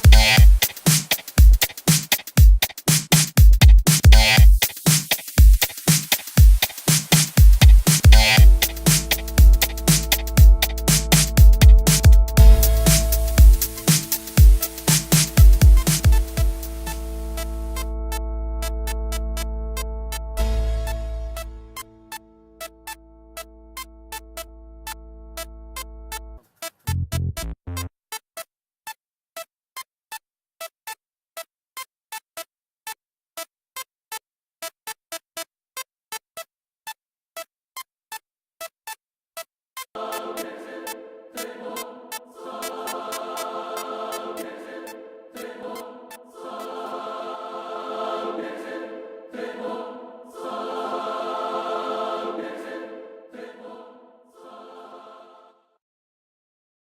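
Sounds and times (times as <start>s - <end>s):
choral singing: 8.0s - 18.0s, 40.0s - 55.8s
sparse synthesizer melody: 8.2s - 26.4s.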